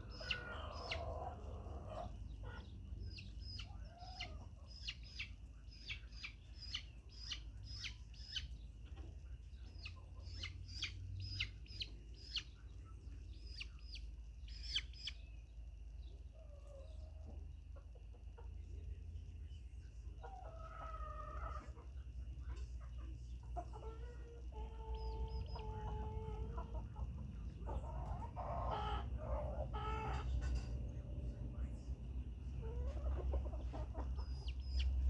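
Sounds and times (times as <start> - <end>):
chickens chirping: 0.0 - 35.0
steady low hum: 21.7 - 35.0.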